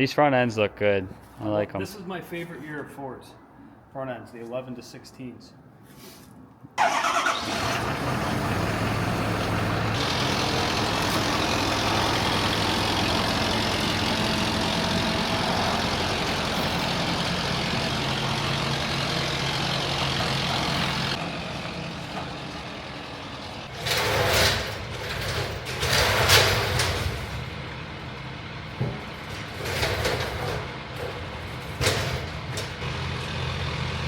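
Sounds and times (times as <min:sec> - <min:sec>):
diesel engine starting and running: 0:06.8 - 0:34.0.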